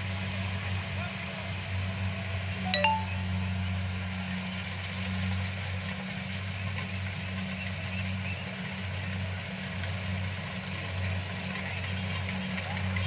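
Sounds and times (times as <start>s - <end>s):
combine harvester engine hum: 0.0s - 13.0s
high chirp: 2.7s - 3.5s.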